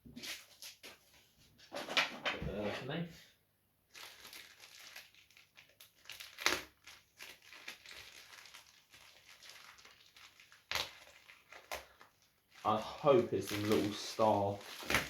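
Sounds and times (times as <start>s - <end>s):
packaging crinkling: 3.9s - 15.0s.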